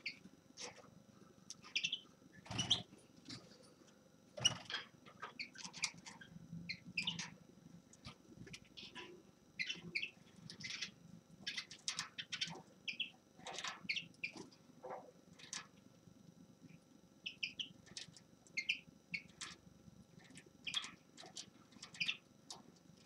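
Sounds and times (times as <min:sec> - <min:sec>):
finch singing: 0:01.6 - 0:02.9, 0:04.4 - 0:07.3, 0:08.5 - 0:14.5, 0:17.2 - 0:17.8, 0:18.6 - 0:19.4, 0:21.8 - 0:22.2.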